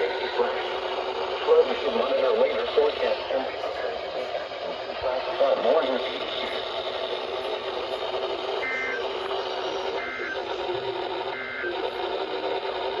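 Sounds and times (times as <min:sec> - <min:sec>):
radio static hiss: 0:00.0 - 0:13.0
shrill two-tone digital warbles: 0:08.6 - 0:09.1, 0:10.0 - 0:10.6.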